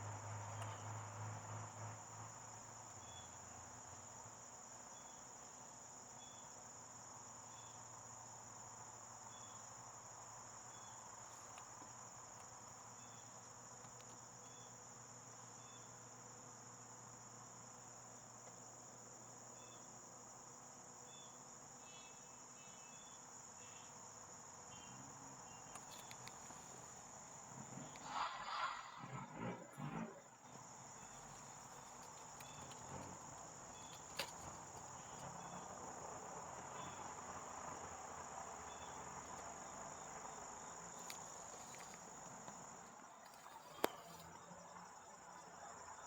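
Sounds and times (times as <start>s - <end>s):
crickets trilling: 0.0s - 46.0s
faint chirps: 43.0s - 46.0s.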